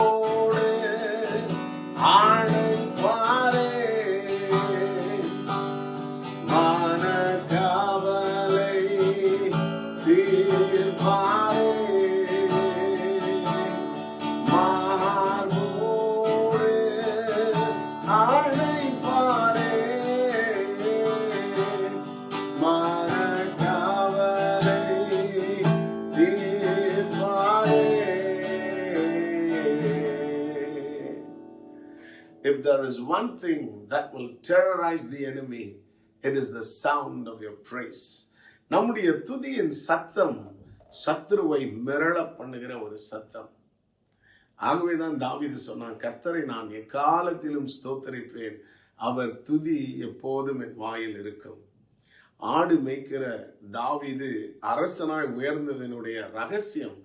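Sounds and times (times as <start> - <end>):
acoustic guitar music: 0.0 - 37.9.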